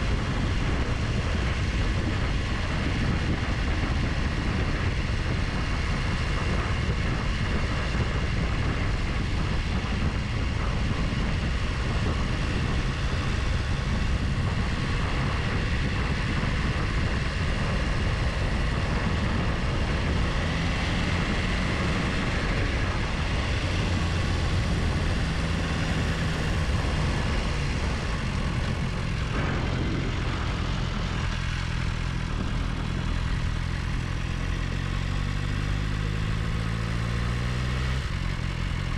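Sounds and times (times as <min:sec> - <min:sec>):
motorcycle engine: 0:00.0 - 0:38.9
rushing wind noise: 0:00.0 - 0:38.9.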